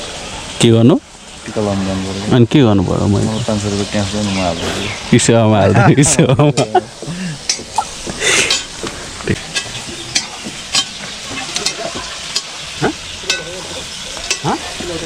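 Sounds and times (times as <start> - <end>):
chicken sizzling in a pan: 0.0 - 15.0
utensil scraping a pan: 9.4 - 14.9.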